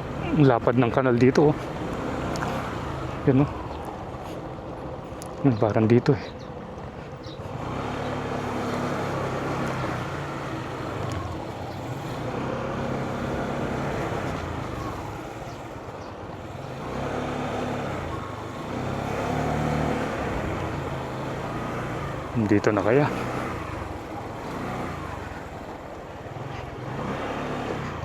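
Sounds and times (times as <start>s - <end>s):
road and wind noise: 0.0s - 28.0s
vehicle engine running: 0.0s - 28.0s.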